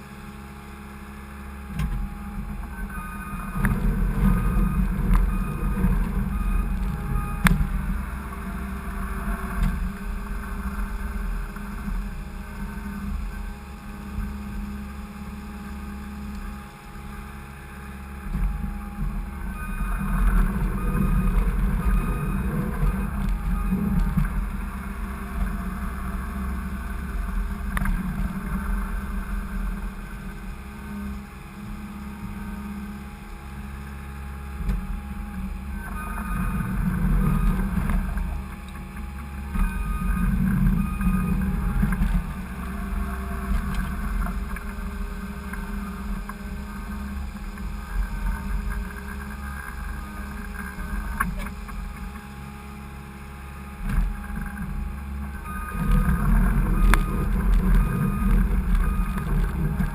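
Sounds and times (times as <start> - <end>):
skid steer engine running: 0.0 - 59.9.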